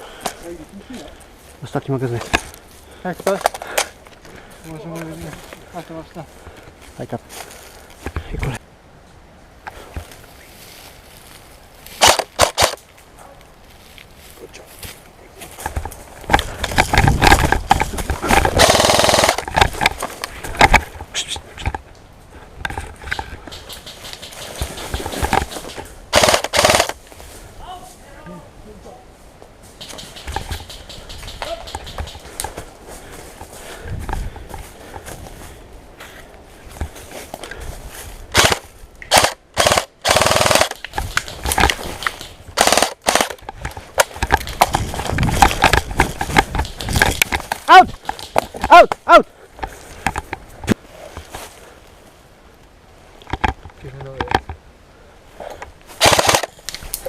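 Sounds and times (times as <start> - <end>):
airsoft gun full-auto burst: 12.0 - 12.8, 18.6 - 19.5, 26.1 - 27.0, 38.4 - 40.8, 42.6 - 43.3, 56.0 - 56.5
sharp clicks and knocks: 22.6 - 27.0, 29.8 - 32.6, 38.4 - 49.0.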